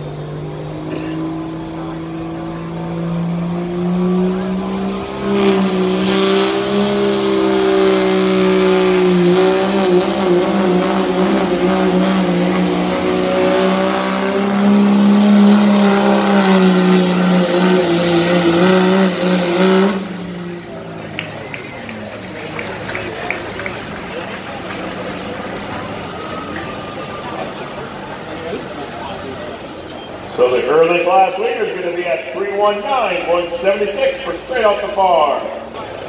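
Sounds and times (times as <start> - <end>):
high whine: 0.0 - 21.8
truck engine at full throttle: 0.0 - 36.0.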